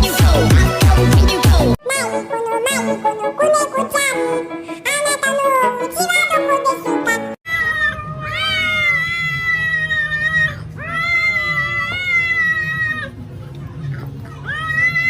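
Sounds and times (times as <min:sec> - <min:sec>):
cat meowing: 0:07.5 - 0:13.2, 0:13.9 - 0:15.0.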